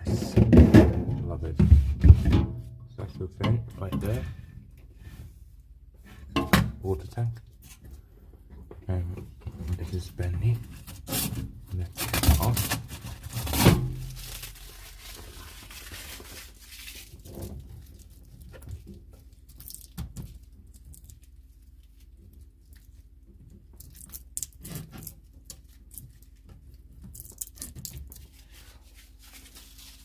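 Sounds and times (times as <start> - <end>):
low steady hum: 0.0 - 30.0
plastic film crinkling: 11.8 - 23.0, 27.1 - 30.0.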